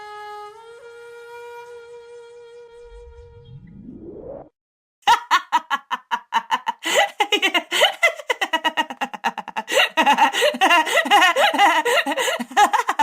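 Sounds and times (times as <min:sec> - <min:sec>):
short rising glide: 0:02.7 - 0:04.6
steady tone: 0:02.8 - 0:04.6
woman laughing: 0:05.1 - 0:13.0.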